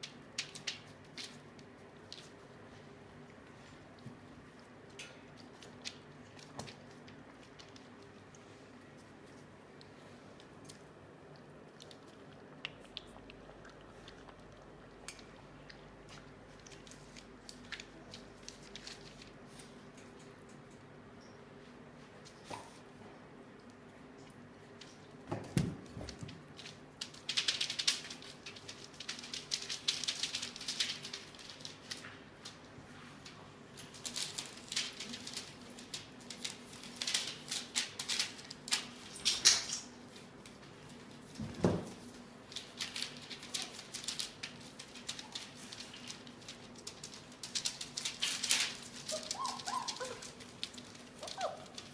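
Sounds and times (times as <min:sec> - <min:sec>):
puppies rustling and clicking: 0:00.0 - 0:51.9
puppies squeaking: 0:49.1 - 0:50.2, 0:51.2 - 0:51.8.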